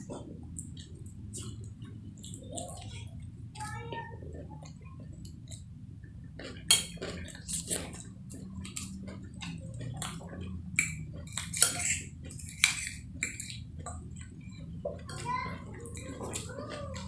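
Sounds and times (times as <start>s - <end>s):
cutlery clinking and scraping on plate: 6.4s - 8.0s, 10.8s - 13.6s.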